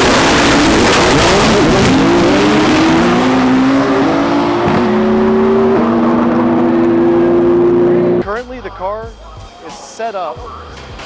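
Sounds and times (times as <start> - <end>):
racing car engine at full throttle: 0.0 - 8.2.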